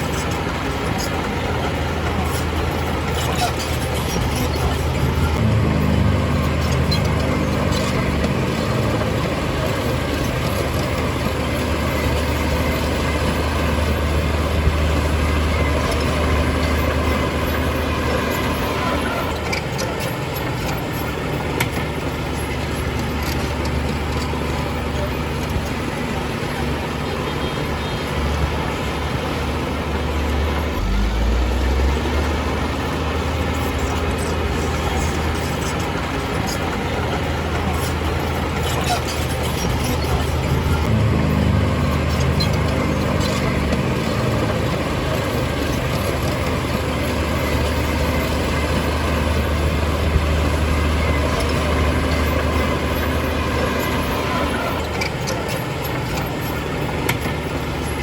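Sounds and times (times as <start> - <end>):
heavy diesel engine rumbling: 0.0 - 58.0.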